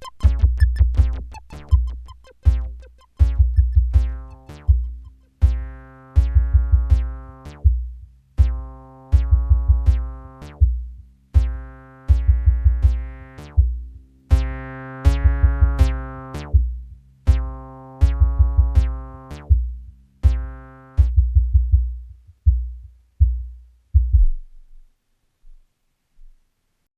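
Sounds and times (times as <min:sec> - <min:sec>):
pounding kick drum: 0:00.0 - 0:16.7, 0:17.3 - 0:24.5.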